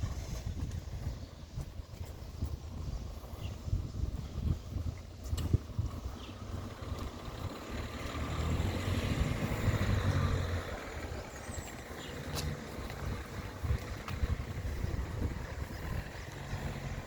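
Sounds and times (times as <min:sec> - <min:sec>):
motor vehicle passing by: 0:05.7 - 0:17.0.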